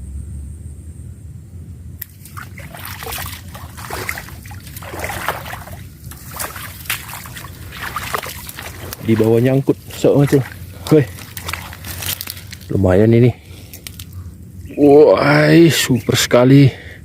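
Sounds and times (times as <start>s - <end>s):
water sloshing and splashing: 2.0s - 14.8s.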